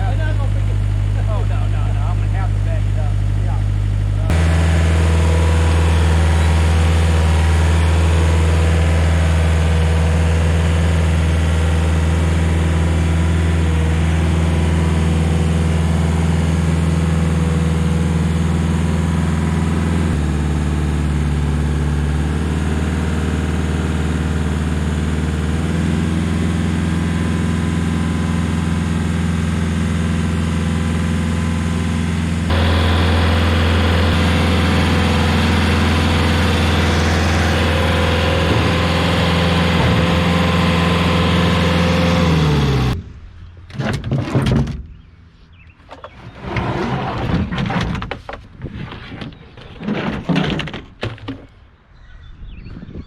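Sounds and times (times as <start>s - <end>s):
stump grinder engine running: 4.2s - 43.0s.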